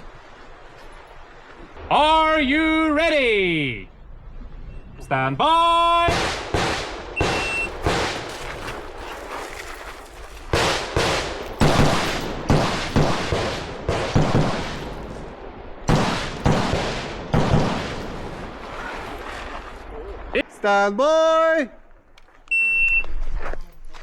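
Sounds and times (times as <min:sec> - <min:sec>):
rifle shots with echo: 0:06.0 - 0:08.5, 0:10.5 - 0:18.7.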